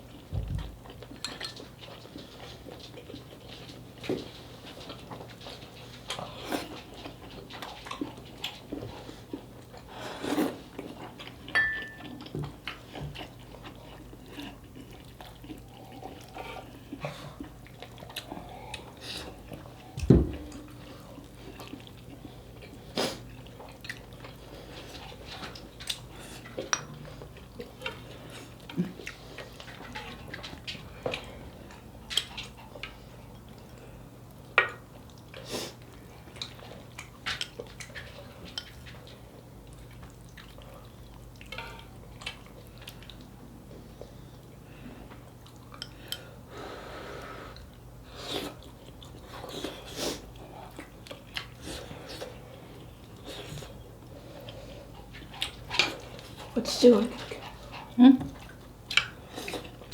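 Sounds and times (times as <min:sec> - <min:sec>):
chewing: 0:00.0 - 0:59.9
faint steady hum: 0:00.0 - 0:59.9
utensils tapping dishes: 0:11.5 - 0:12.0
heavy thump: 0:20.0 - 0:20.6.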